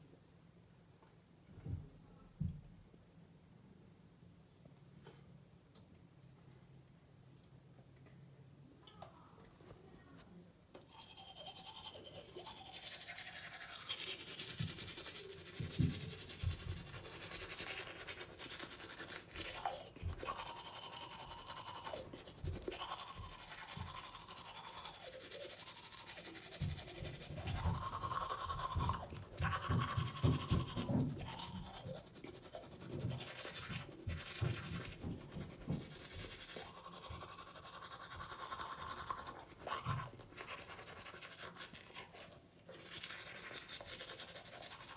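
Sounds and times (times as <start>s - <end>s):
toothbrush scrubbing teeth: 10.8s - 44.9s.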